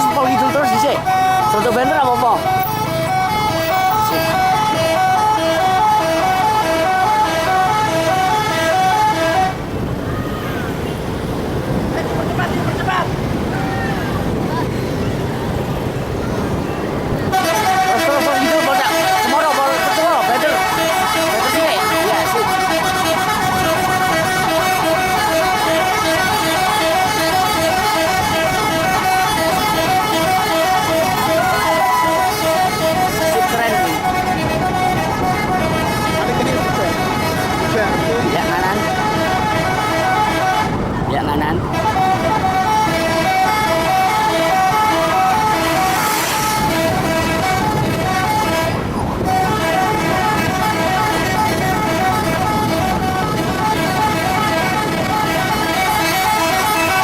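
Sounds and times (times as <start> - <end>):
bus horn melody: 0.0 - 9.9, 15.2 - 57.0
traffic noise: 0.0 - 57.0.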